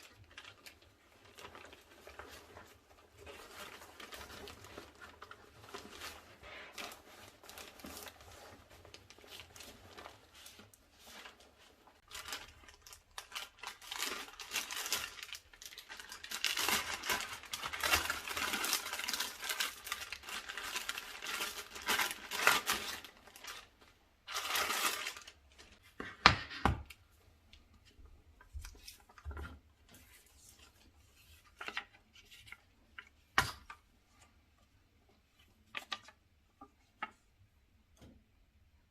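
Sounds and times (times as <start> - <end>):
packaging rustling and crinkling: 0.0 - 26.1.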